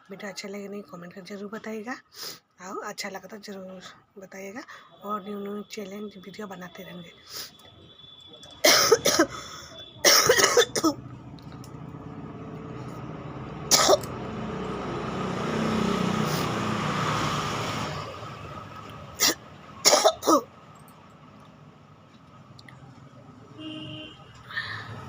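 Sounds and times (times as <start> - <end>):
woman coughing: 8.6 - 11.0, 13.7 - 14.1, 19.2 - 20.5
vehicle passing rumble: 10.6 - 25.0.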